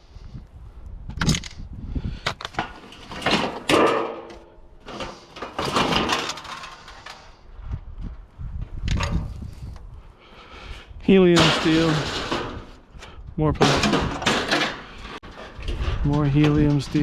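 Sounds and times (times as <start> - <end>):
scraping and rattling: 2.3 - 7.4, 11.3 - 12.9, 13.6 - 17.0.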